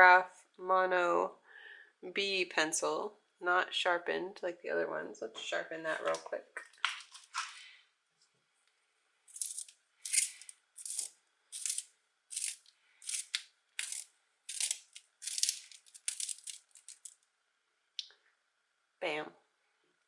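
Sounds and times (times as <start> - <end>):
pencil being sharpened by hand: 9.4 - 16.3.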